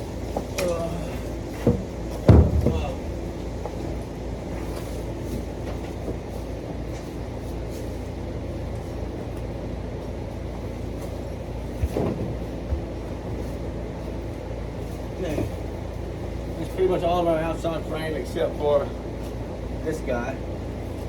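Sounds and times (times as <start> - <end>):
low mechanical rumble: 0.0 - 21.0
sharp knocks: 1.6 - 3.8.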